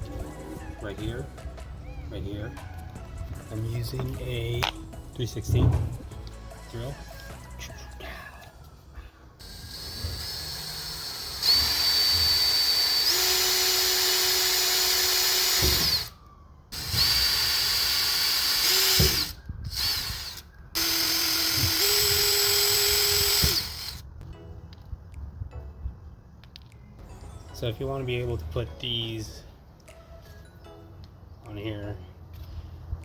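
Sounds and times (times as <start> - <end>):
electric drill drilling metal: 9.4 - 16.2, 16.8 - 24.0.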